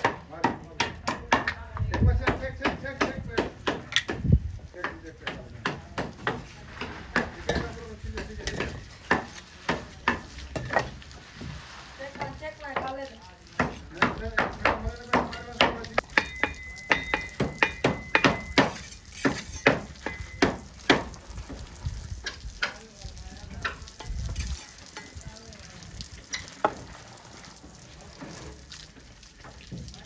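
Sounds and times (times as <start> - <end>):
trowel tapping and scraping brick: 0.0 - 11.5, 13.6 - 21.2.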